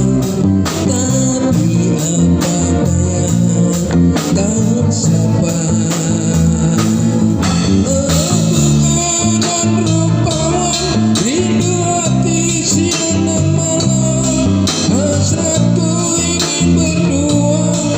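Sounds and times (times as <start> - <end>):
loud music with guitar and bass: 0.0 - 17.9.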